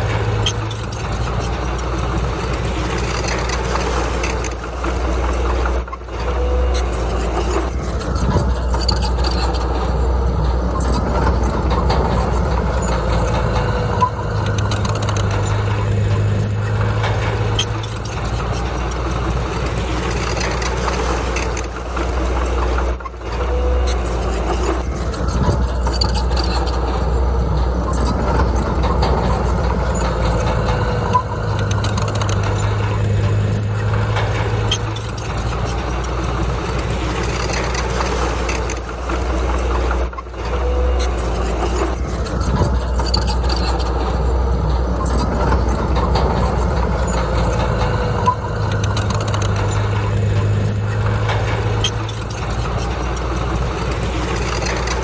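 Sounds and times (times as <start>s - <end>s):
heavy diesel machinery engine drone: 0.0s - 55.0s.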